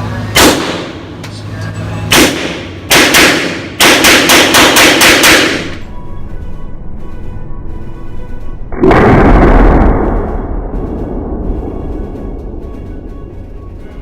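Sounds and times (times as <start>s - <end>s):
pistol shots: 0.4s - 1.1s, 2.1s - 5.8s.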